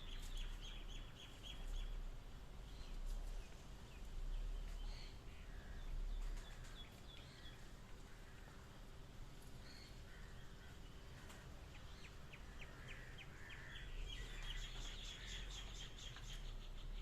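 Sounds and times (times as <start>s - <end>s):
bird chirping: 0.0s - 2.1s, 11.7s - 17.0s
faint background noise: 0.0s - 17.0s.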